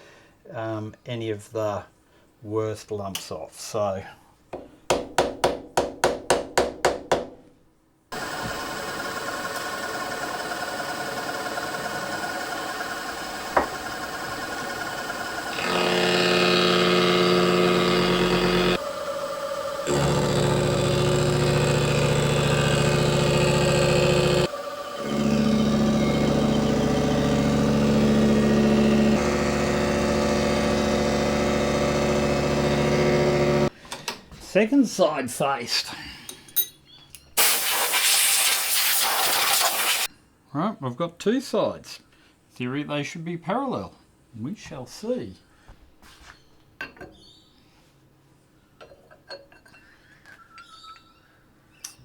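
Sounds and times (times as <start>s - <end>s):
milling machine motor hum: 8.2s - 33.7s.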